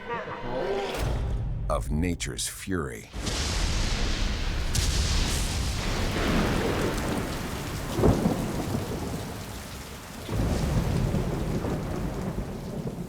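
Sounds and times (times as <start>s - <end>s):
heavy rain: 3.2s - 13.0s
rumbling thunderclap: 4.8s - 9.5s, 10.3s - 13.0s.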